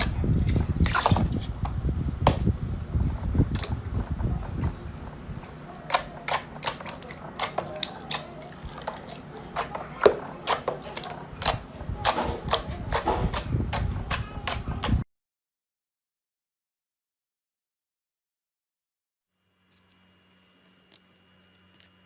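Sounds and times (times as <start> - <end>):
slime popping and crackling: 5.4 - 13.1.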